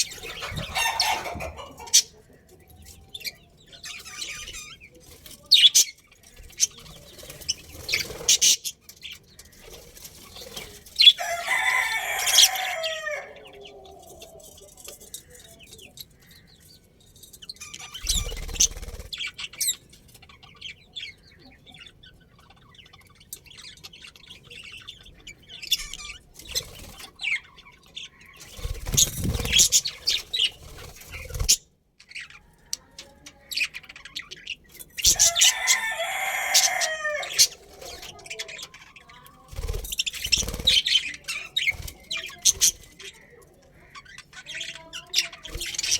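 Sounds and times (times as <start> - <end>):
birds chirping: 0.0 - 45.9
wing fluttering: 6.2 - 8.7, 17.9 - 19.4, 26.3 - 27.2, 28.4 - 31.7, 39.5 - 43.0.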